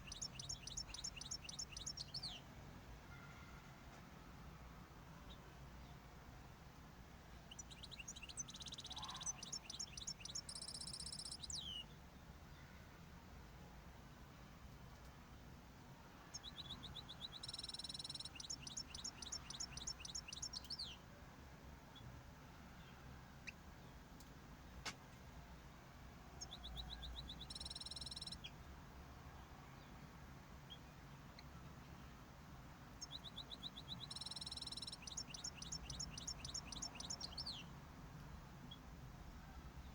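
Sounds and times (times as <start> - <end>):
finch singing: 0.0 - 2.4, 7.5 - 11.8, 16.3 - 21.0, 26.4 - 28.5, 33.0 - 37.7
birds chirping: 0.0 - 2.5, 7.4 - 12.0, 16.2 - 21.0, 26.3 - 28.6, 32.8 - 37.8.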